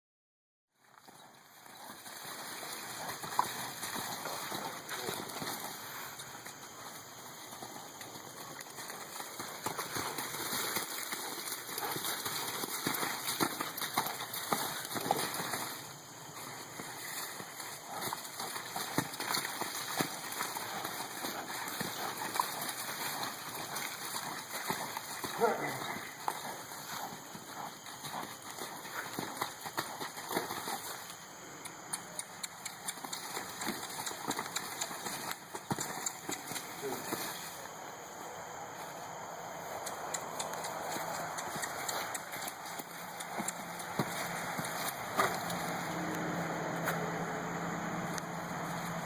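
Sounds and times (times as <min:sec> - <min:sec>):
horse hooves knocking: 0:31.7 - 0:37.3, 0:39.8 - 0:46.8.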